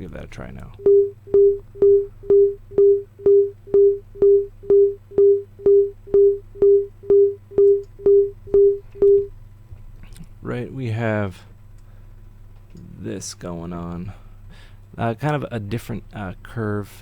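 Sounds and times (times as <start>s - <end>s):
short pure sine beeps: 0.8s - 9.3s.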